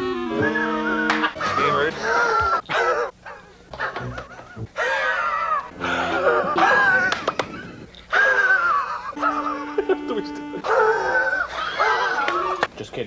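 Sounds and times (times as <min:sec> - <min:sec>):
man wheezing laugh: 0:03.9 - 0:10.0.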